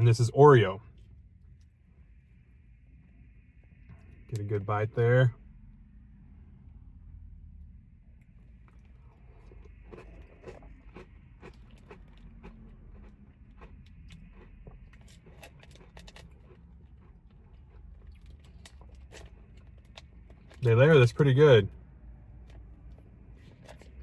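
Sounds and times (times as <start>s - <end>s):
chewing crunchy food: 8.2s - 20.7s, 22.3s - 24.0s.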